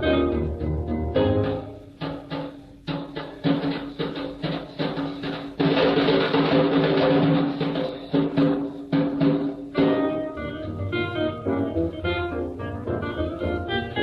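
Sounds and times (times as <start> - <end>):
held chords: 0.0 - 3.5, 9.6 - 14.0
drum roll: 0.0 - 14.0
drum strikes: 0.8 - 11.9.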